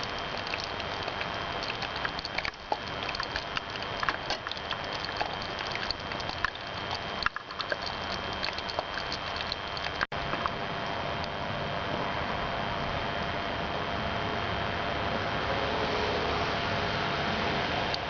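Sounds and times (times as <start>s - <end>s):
fire crackling and popping: 0.0s - 10.6s.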